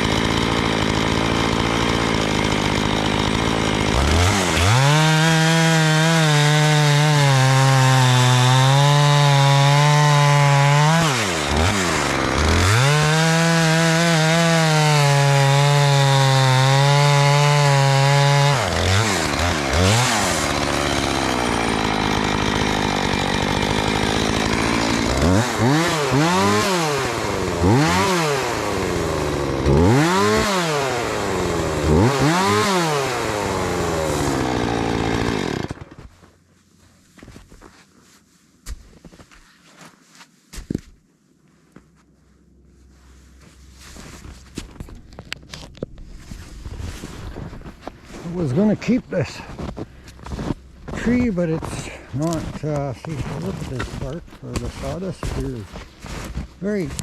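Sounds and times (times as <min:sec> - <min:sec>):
chainsaw idling and revving: 0:00.0 - 0:36.0, 0:47.0 - 0:57.0.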